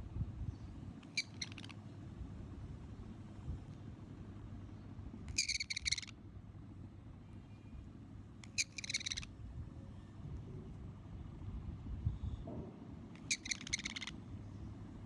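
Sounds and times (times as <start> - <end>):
low background rumble: 0.0 - 15.0
parrot chattering calls: 1.0 - 1.8, 5.3 - 6.2, 8.4 - 9.3, 13.1 - 14.2.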